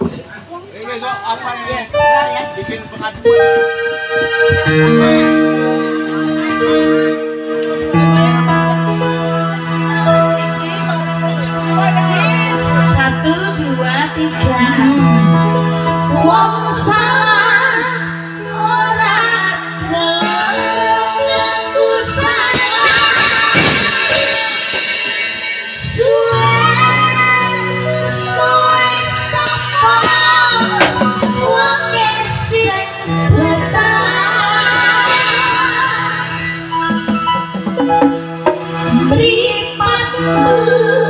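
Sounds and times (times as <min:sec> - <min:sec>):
woman singing: 0:16.0 - 0:24.7, 0:25.8 - 0:36.6, 0:38.9 - 0:41.0
held bass notes: 0:25.7 - 0:41.0.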